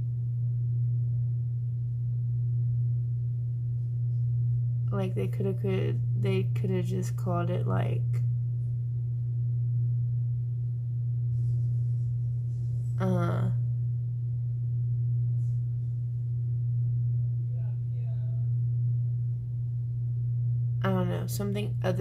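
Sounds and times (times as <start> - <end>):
steady low hum: 0.0 - 22.0
woman's voice: 4.9 - 8.2, 13.0 - 13.6, 20.8 - 22.0.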